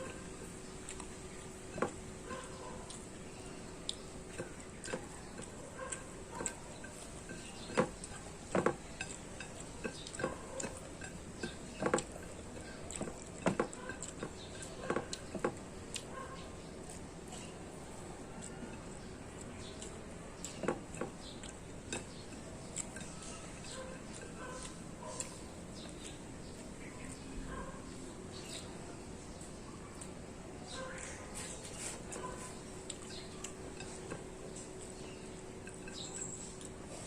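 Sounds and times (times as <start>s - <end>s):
chewing: 0.0s - 37.0s
cutlery clinking on dishes: 4.3s - 15.6s, 20.4s - 25.9s, 31.4s - 37.0s.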